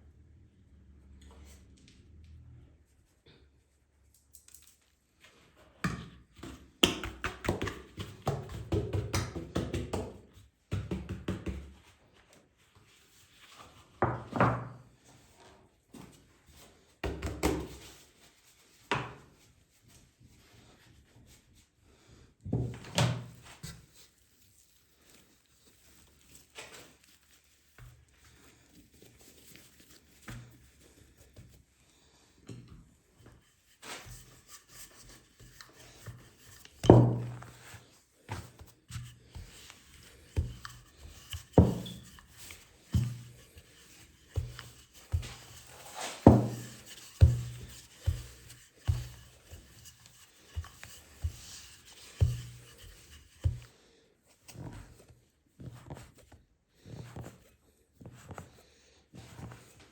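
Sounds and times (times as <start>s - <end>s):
rubbing on wood: 38.4s - 53.7s
knocks on wooden surface: 46.3s - 46.6s.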